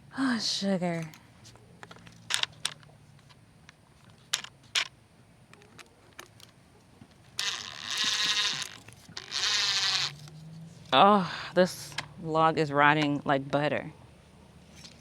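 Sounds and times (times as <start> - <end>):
power drill driving screws: 7.4 - 10.2.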